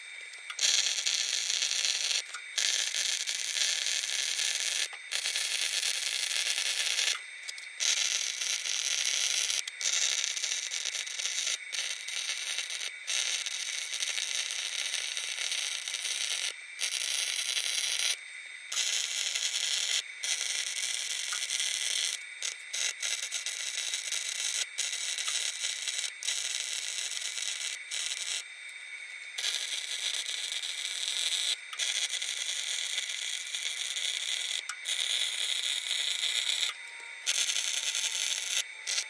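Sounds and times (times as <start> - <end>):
power tool cutting steel: 35.3 - 39.0.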